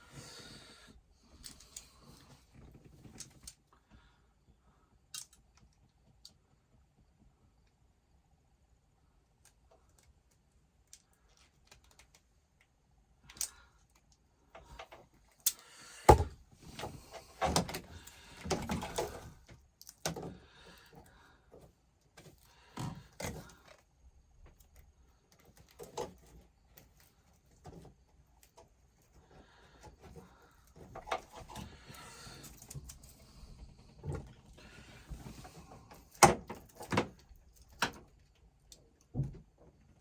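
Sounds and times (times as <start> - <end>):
hands and tools clicking on wiring: 9.4 - 15.6.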